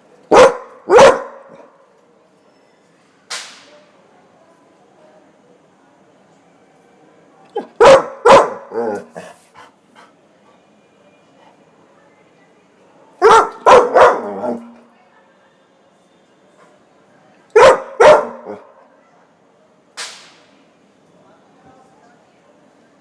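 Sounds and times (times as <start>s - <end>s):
dog barking: 0.3s - 1.7s, 7.6s - 9.3s, 13.2s - 14.8s, 17.5s - 18.7s.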